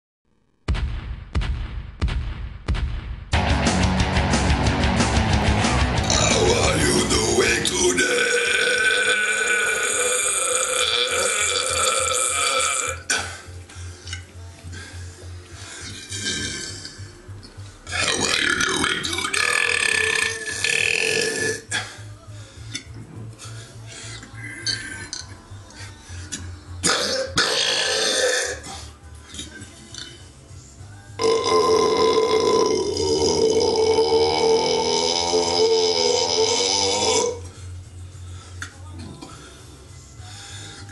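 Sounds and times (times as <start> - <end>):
background music with low beat: 0.6 - 40.9
long loud belch: 6.0 - 6.8, 7.9 - 13.4, 16.1 - 16.9, 17.9 - 21.8, 26.8 - 28.7, 31.2 - 37.5.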